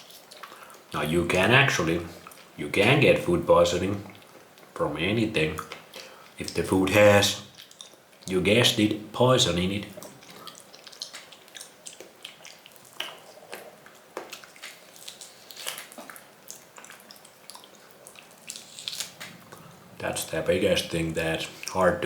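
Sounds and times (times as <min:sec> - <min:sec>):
wet chewing with mouth clicks: 0:00.0 - 0:00.9, 0:02.1 - 0:02.6, 0:07.4 - 0:08.4, 0:09.8 - 0:20.0, 0:20.8 - 0:22.0.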